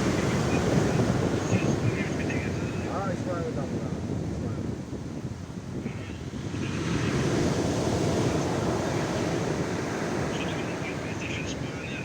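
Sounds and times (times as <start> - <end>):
waves breaking on beach: 0.0 - 12.0
wind buffeting microphone: 0.0 - 12.0.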